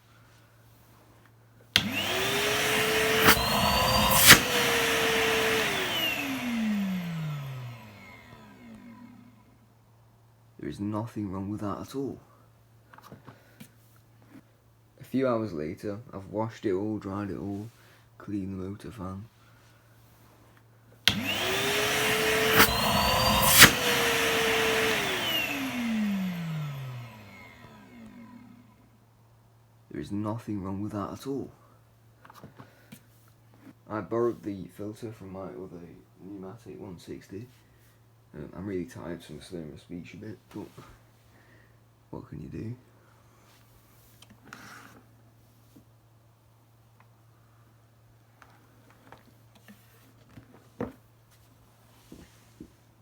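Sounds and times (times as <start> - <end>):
vacuum cleaner motor whining: 1.8 - 9.5, 21.1 - 28.8.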